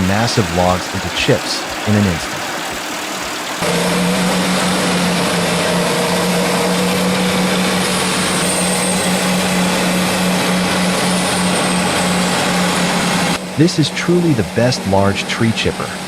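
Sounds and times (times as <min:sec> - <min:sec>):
wood chipper grinding wood: 0:03.6 - 0:16.0.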